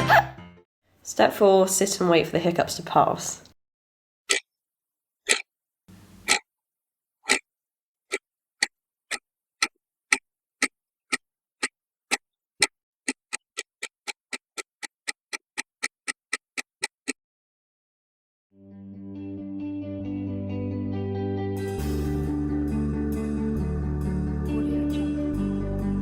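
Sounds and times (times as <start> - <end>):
clock ticking: 6.2 - 6.4, 8.1 - 17.2.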